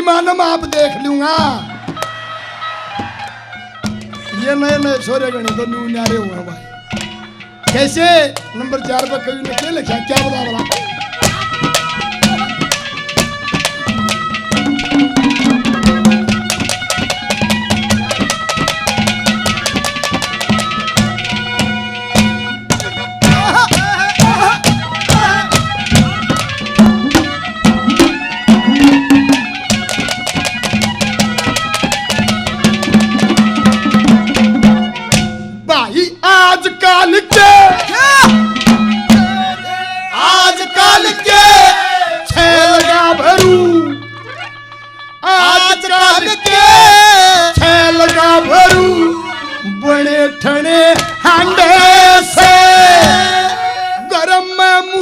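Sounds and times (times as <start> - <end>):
held melody: 0.0 - 55.0
fast hand drum strokes: 6.9 - 35.5, 37.3 - 39.6.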